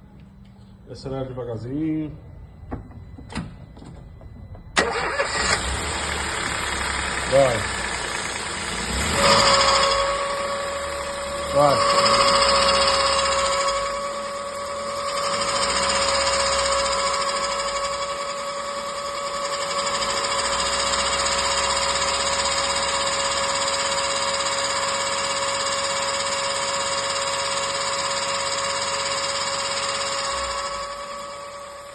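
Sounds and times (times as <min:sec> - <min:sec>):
car engine running: 0:03.2 - 0:31.9
scraping whining noise: 0:09.1 - 0:18.6.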